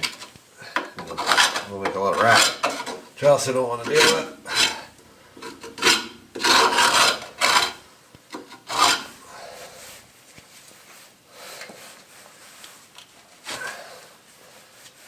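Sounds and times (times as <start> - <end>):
scraping rust off metal brake: 0.0 - 9.2.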